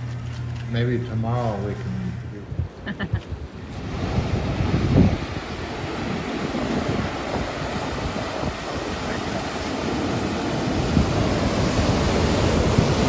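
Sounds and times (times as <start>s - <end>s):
wind rumbling on microphone: 1.7s - 13.0s
ocean surf breaking: 3.4s - 13.0s.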